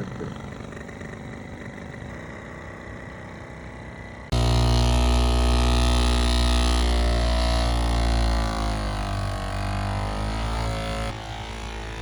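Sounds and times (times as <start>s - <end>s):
low synth drone: 4.2s - 12.0s.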